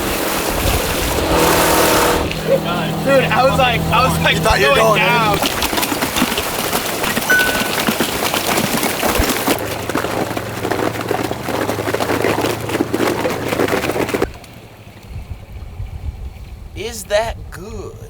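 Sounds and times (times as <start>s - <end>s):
engine drone: 0.0s - 8.8s
ice breaking and water splashing: 4.6s - 14.5s.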